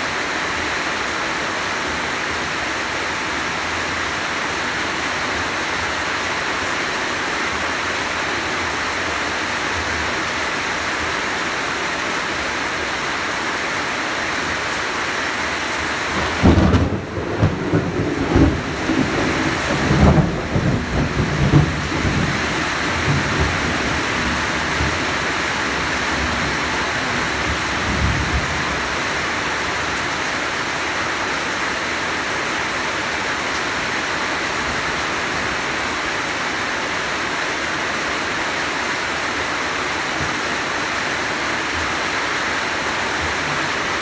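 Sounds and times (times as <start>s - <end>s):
heavy rain: 0.0s - 44.0s
thunder rumbling: 16.0s - 30.1s.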